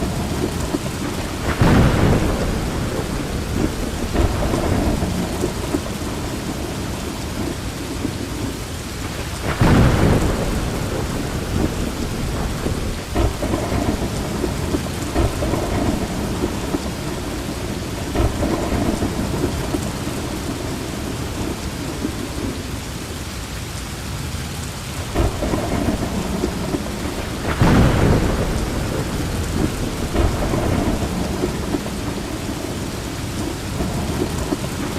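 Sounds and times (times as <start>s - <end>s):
thunder rumbling: 0.0s - 23.0s, 24.8s - 34.9s
heavy rain falling: 0.0s - 34.9s.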